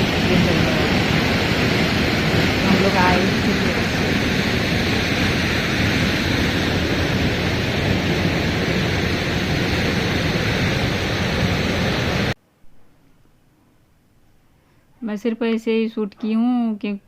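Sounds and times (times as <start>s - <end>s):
waterfall rushing: 0.0s - 12.4s.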